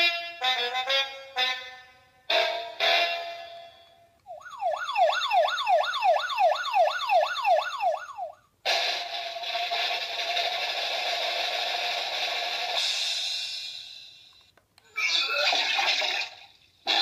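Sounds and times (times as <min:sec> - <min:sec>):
electronic siren wail: 0:04.3 - 0:08.4
loud hissing effect: 0:12.6 - 0:14.3.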